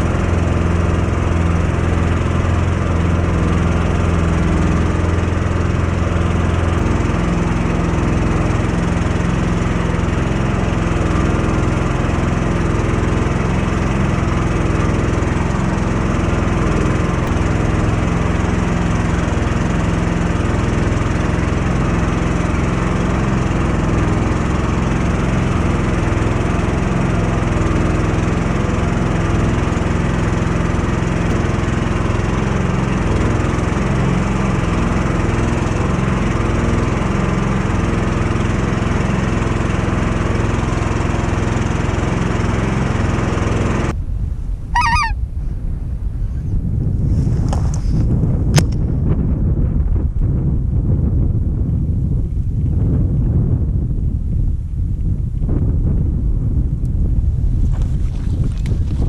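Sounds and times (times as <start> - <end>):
small engine running: 0.0 - 43.9, 44.7 - 45.2.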